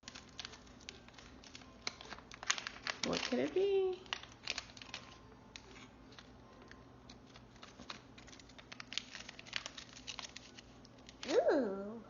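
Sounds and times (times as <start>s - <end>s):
packaging rustling: 0.0s - 11.5s
toy packaging clicks: 0.0s - 11.5s.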